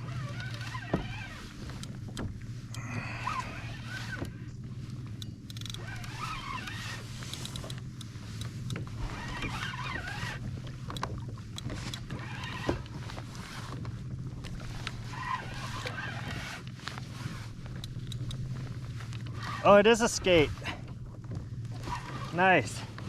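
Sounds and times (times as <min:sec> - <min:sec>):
water lapping against kayak hull: 0:00.0 - 0:23.0
small clicks and knocks: 0:05.0 - 0:09.6, 0:10.6 - 0:13.0, 0:17.6 - 0:19.4.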